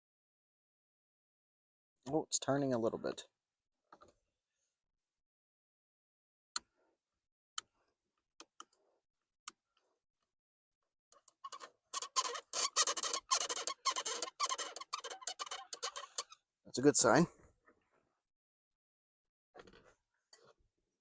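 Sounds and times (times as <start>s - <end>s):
metal clicking and scraping: 11.2s - 16.3s.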